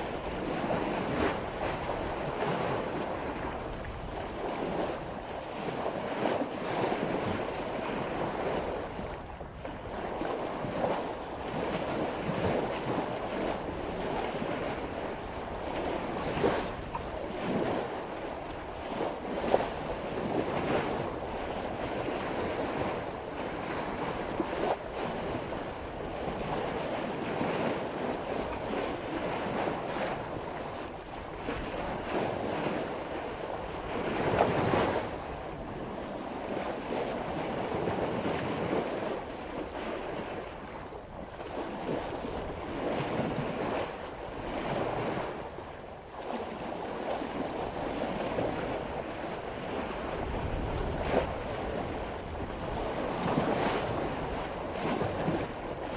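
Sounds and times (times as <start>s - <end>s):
wind buffeting microphone: 0.0s - 45.8s, 47.0s - 55.9s
water rushing along a hull: 0.0s - 55.9s.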